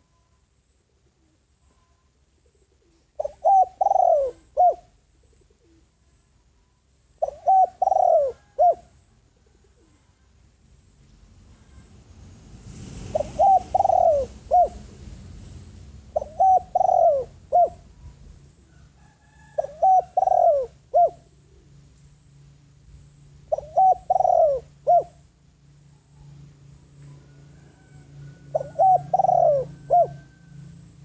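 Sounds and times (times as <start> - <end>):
dove cooing: 0.9 - 6.2, 7.2 - 10.3, 13.1 - 14.9, 16.0 - 21.9, 23.1 - 31.0.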